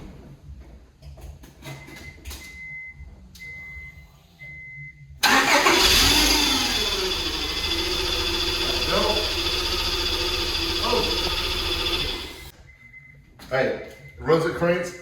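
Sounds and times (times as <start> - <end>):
car engine starting and running: 5.2 - 12.5.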